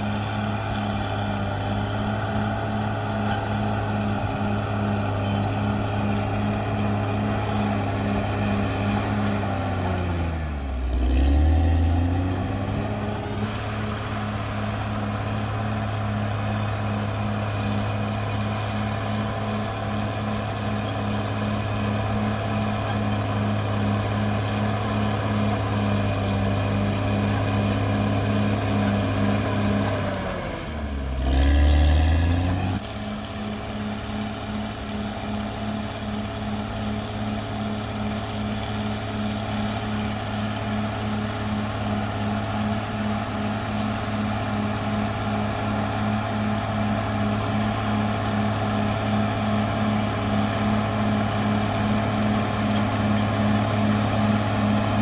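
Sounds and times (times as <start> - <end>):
deep loud engine sound: 0.0 - 32.9
bulldozer diesel engine running: 0.0 - 55.0.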